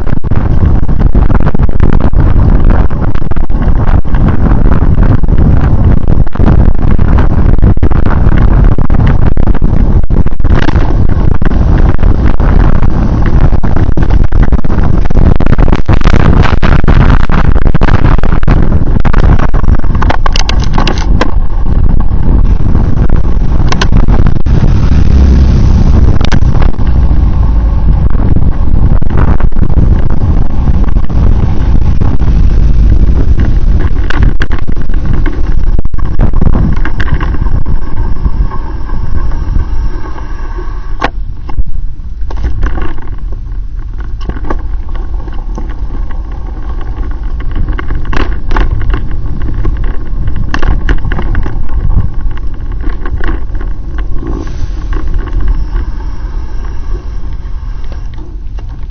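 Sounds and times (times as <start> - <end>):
wind and road rumble: 0.0 - 58.9
sharp clicks and knocks: 10.4 - 24.6, 42.2 - 55.9.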